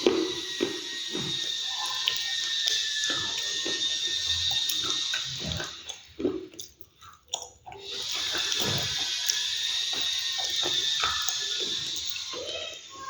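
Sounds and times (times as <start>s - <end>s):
chewing and crunching food: 0.0s - 13.0s.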